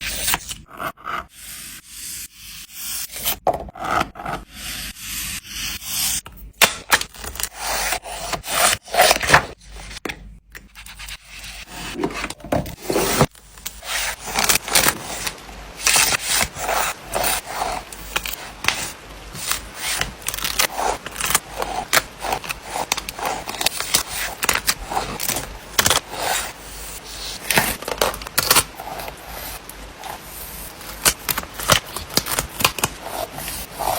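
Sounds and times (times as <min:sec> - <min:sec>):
paper rubbing and crinkling: 0:10.8 - 0:33.9.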